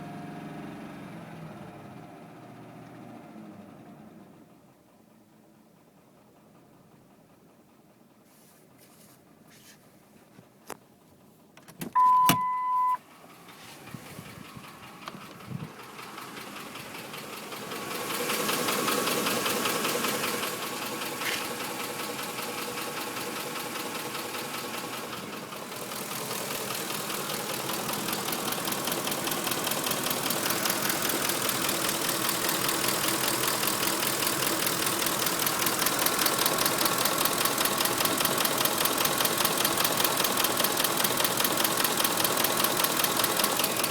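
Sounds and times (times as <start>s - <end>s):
truck engine starting and idling: 0.0s - 8.2s, 11.7s - 43.9s
engine tapping: 13.3s - 43.9s.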